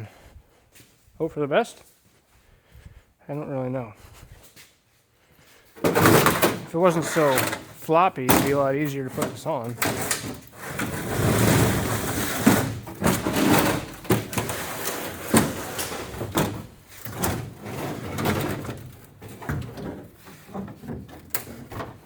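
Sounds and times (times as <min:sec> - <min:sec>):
knocks and bumps: 0:05.8 - 0:22.0
panel scraping and crunching: 0:05.8 - 0:22.0.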